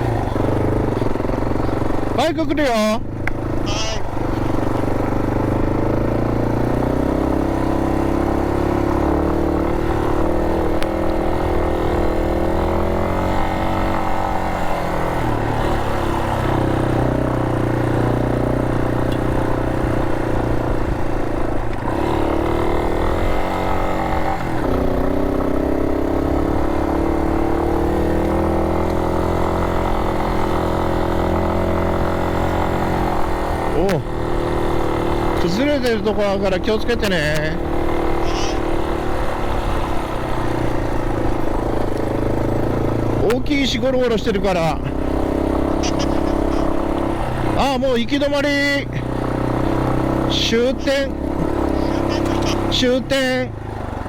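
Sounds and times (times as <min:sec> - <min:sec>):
motorcycle engine revving while riding: 0:00.0 - 0:54.0.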